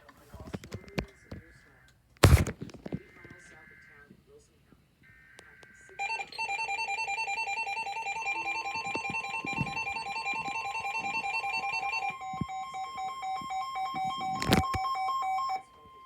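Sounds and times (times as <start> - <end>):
alternating two-pitch alarm tone: 6.0 - 16.0
steady high tone: 6.0 - 16.0.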